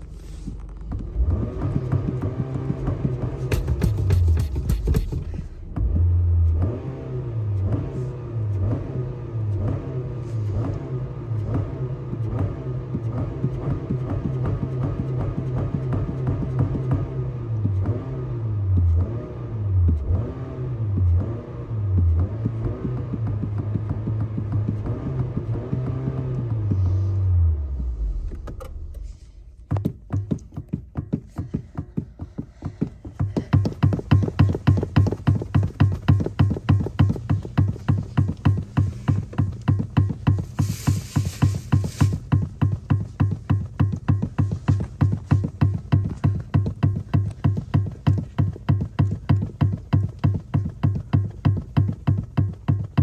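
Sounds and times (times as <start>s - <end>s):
car engine revving: 0.1s - 29.6s, 33.1s - 52.9s
percussive music beat: 1.0s - 7.9s, 10.8s - 18.1s, 29.6s - 53.0s.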